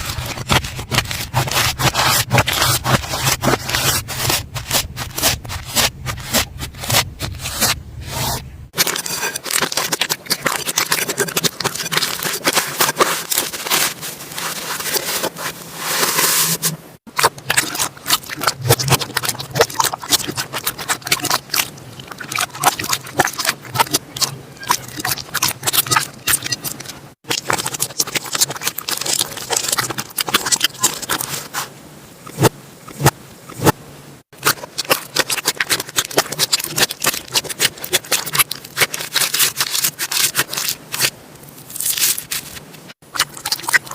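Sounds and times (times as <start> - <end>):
slime crackling and popping: 34.4 - 43.9.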